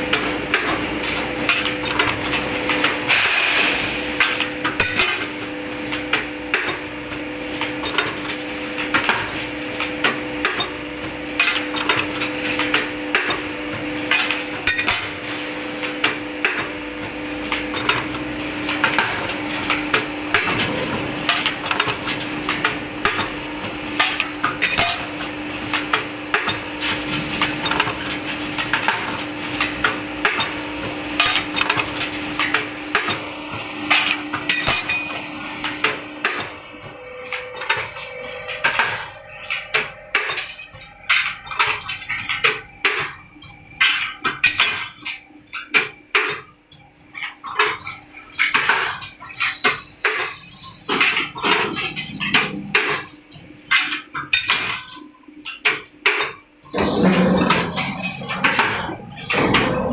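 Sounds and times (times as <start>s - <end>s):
machine motor hum: 56.6s - 59.9s.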